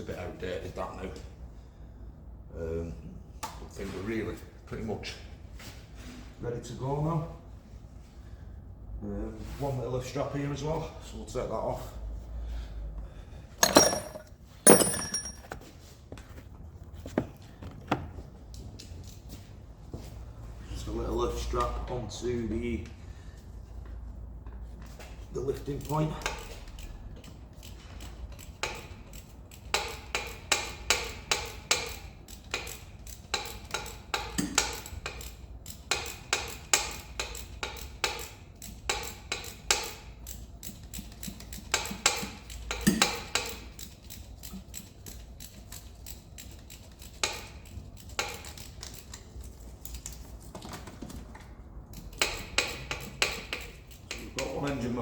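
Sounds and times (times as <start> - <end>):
metal tools clinking: 13.6 - 15.7.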